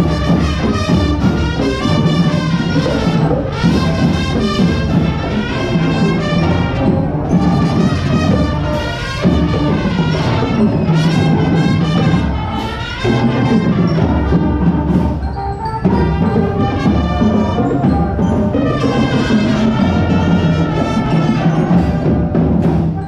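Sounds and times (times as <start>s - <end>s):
music with brass and percussion: 0.0s - 23.0s.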